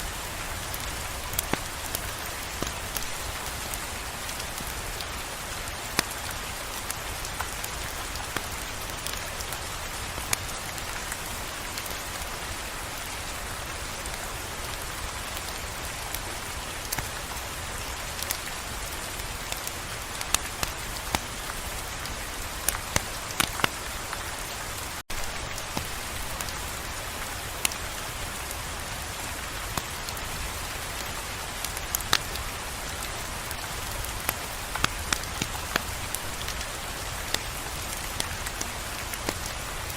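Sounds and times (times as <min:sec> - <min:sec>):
rain hiss: 0:00.0 - 0:39.9
sharp ticks and crackles: 0:31.7 - 0:39.6.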